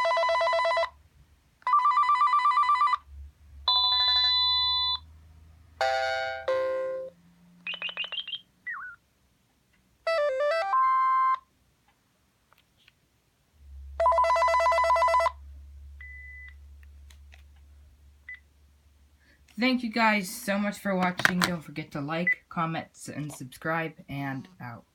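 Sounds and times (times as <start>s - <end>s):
cordless phone electronic ringtones: 0.0s - 0.9s, 1.7s - 3.0s, 3.7s - 5.0s, 7.7s - 9.0s, 10.1s - 11.4s, 14.0s - 15.4s.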